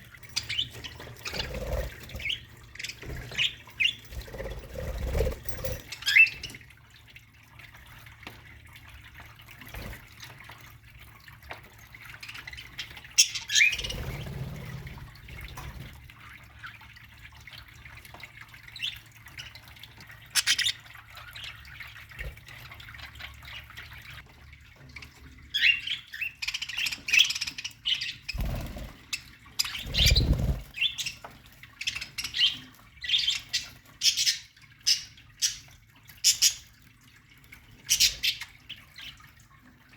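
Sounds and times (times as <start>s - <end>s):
budgerigars chirping and squawking: 0.3s - 6.6s, 12.1s - 14.3s, 18.7s - 22.0s, 25.5s - 36.7s, 37.8s - 39.3s.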